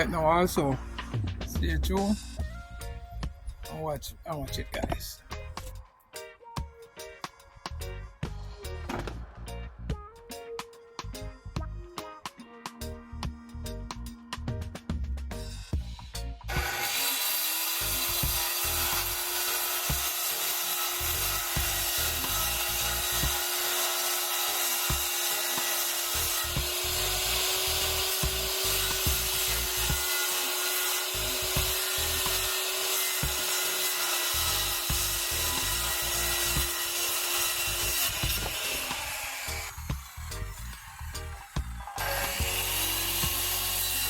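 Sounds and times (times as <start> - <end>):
power tool motor whine: 16.5 - 44.0.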